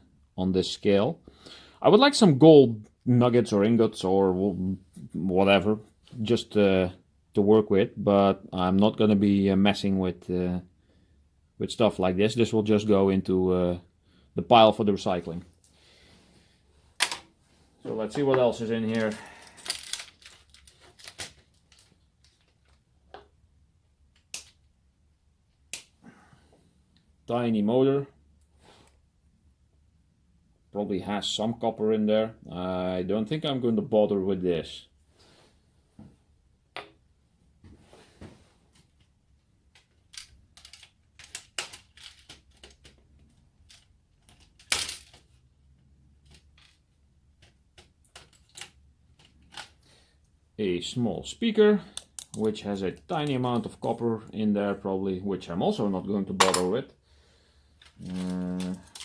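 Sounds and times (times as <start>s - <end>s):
plastic parts clicking and tapping: 17.0s - 17.3s, 18.1s - 23.4s, 38.7s - 45.4s, 46.2s - 49.8s, 51.9s - 53.7s, 57.8s - 59.0s.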